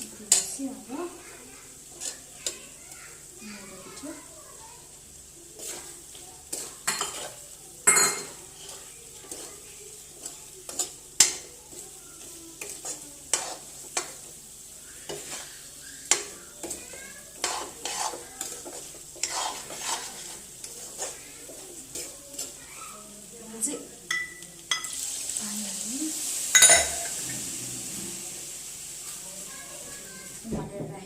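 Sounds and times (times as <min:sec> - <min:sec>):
spices sizzling faintly: 0:00.0 - 0:31.0
utensil scraping a pot: 0:01.9 - 0:02.6, 0:05.6 - 0:11.8, 0:12.6 - 0:14.2, 0:14.9 - 0:23.1.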